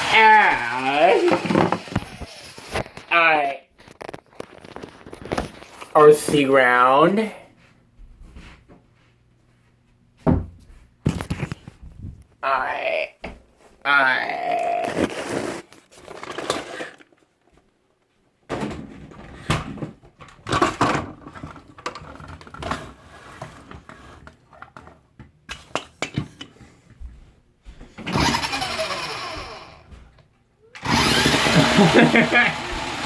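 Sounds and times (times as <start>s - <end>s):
person imitating engine with mouth: 13.9s - 15.1s.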